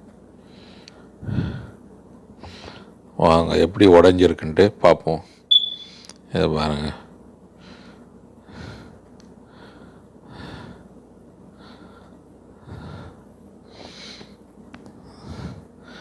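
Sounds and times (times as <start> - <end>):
person breathing: 0.4 - 1.8, 2.4 - 3.0, 7.6 - 10.9, 11.5 - 14.4, 15.0 - 16.0.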